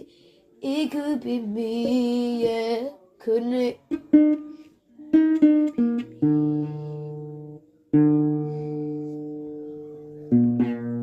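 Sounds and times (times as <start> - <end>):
guitar chords strummed: 5.2 - 11.0.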